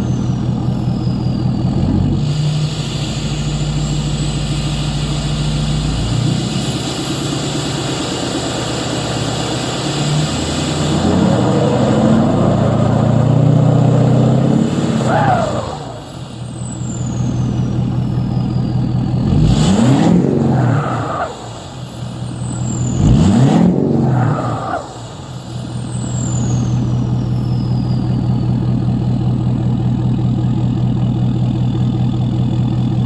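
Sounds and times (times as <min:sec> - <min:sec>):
diesel engine idling and revving: 0:00.0 - 0:33.0
turbo whistle sliding down: 0:08.9 - 0:17.9.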